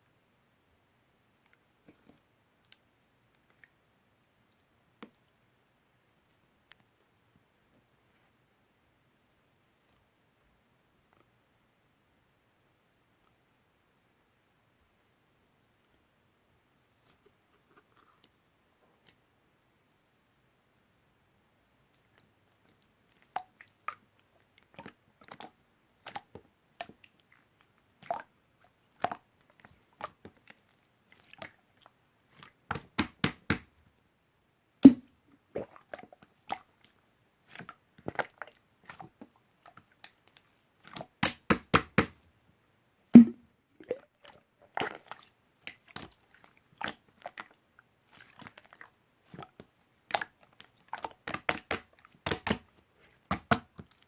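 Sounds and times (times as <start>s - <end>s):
slime clicking and popping: 51.2s - 52.6s, 53.3s - 53.7s.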